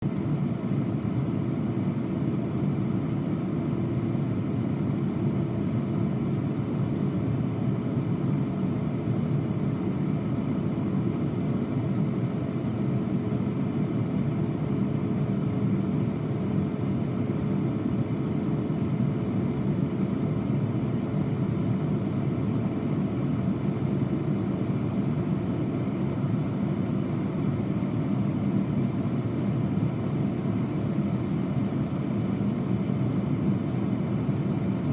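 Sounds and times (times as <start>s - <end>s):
air fryer fan whirring: 13.7s - 34.9s.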